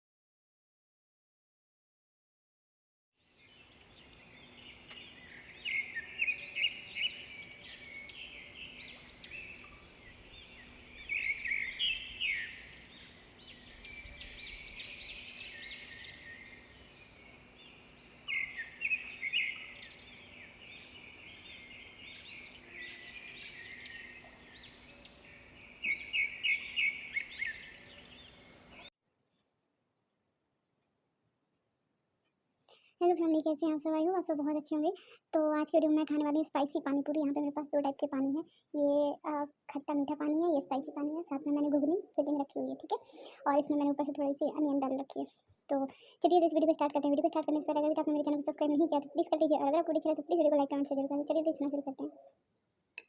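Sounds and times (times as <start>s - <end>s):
small birds chirping: 3.2s - 28.9s, 35.5s - 52.4s
faint steady hum: 3.6s - 28.9s.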